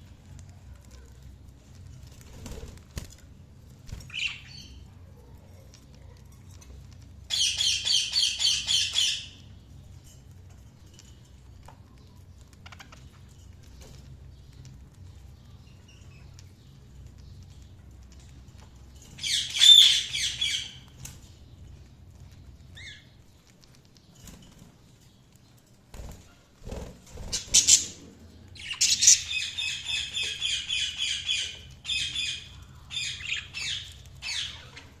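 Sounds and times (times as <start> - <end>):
budgerigars chirping: 7.3 - 9.3, 27.2 - 28.0.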